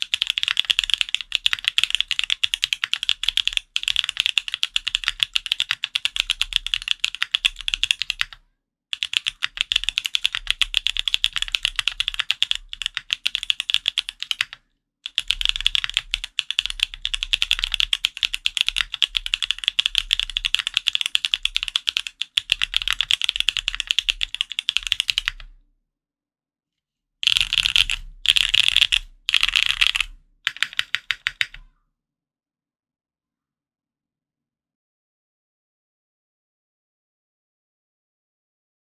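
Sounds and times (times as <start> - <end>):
fast typing on mechanical keyboard: 0.0 - 8.4, 9.0 - 25.5, 27.2 - 31.6.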